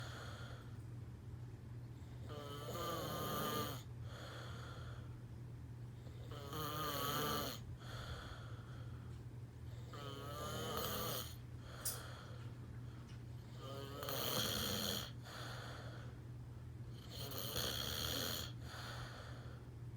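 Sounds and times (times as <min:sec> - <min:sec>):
quiet breathing: 0:00.0 - 0:00.9, 0:03.8 - 0:05.3, 0:07.6 - 0:10.4, 0:11.2 - 0:14.0, 0:15.0 - 0:16.3, 0:18.4 - 0:19.9
steady low hum: 0:00.0 - 0:19.9
man snoring: 0:02.3 - 0:03.9, 0:06.2 - 0:07.7, 0:09.9 - 0:11.4, 0:13.5 - 0:15.2, 0:17.0 - 0:18.6.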